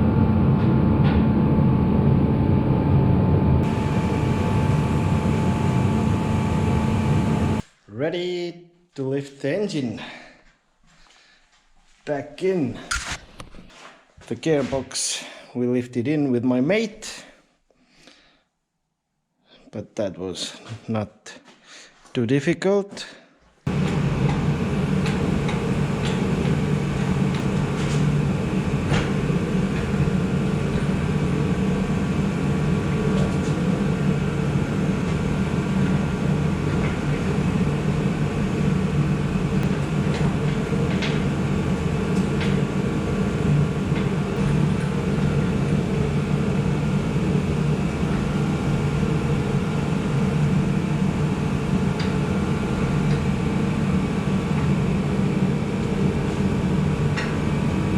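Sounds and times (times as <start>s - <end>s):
mechanical drone: 0.0s - 7.6s, 23.7s - 57.9s.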